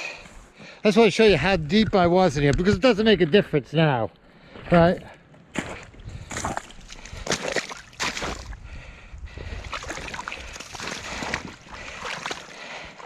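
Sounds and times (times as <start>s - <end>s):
boots squelching through mud: 4.7s - 8.6s, 9.6s - 13.0s.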